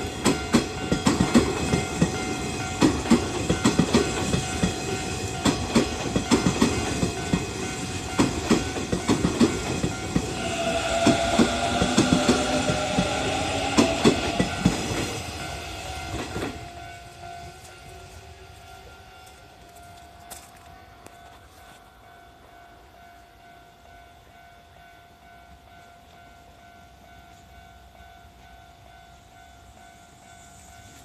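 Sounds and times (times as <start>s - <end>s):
train wheels clicking over rail joints: 0.0s - 18.1s
crossing warning bell: 0.0s - 31.0s
train horn: 10.1s - 18.7s.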